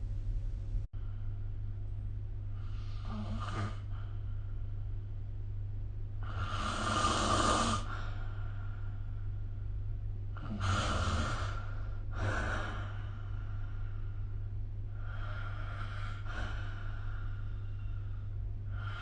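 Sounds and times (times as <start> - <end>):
steady low hum: 0.0 - 19.0
person snoring: 2.7 - 4.0, 6.2 - 8.3, 10.4 - 13.4.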